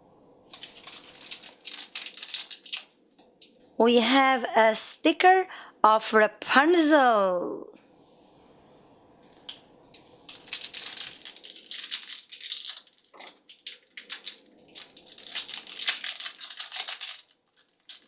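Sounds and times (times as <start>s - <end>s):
plastic packaging crinkling and tearing: 0.5s - 3.6s, 10.0s - 18.0s.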